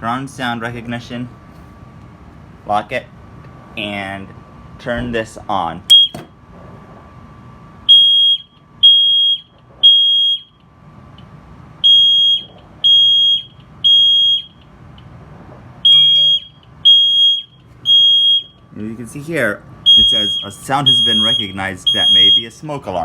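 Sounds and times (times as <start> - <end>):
fire alarm horn beeping: 5.9 - 6.2, 7.8 - 10.6, 11.8 - 14.7, 15.8 - 18.7, 19.8 - 22.6.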